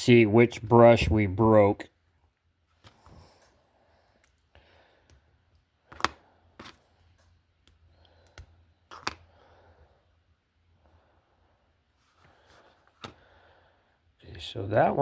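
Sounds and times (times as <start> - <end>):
small parts clicking and tapping: 4.2 - 9.3.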